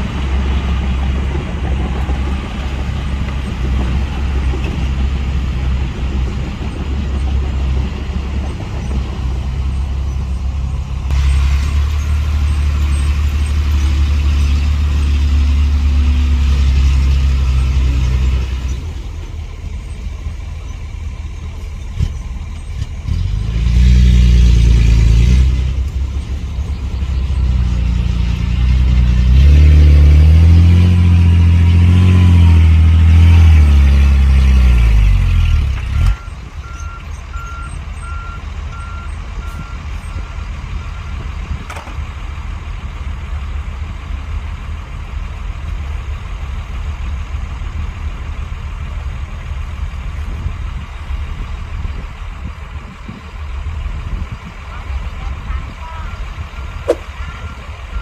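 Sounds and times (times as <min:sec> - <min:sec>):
heavy diesel engine revving: 0:00.0 - 0:58.0
reversing alarm beeping: 0:36.0 - 0:41.2, 0:56.6 - 0:58.0.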